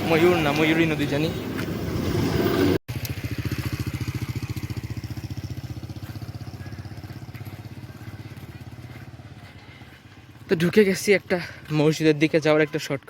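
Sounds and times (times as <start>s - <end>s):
small engine puttering: 1.9s - 10.5s.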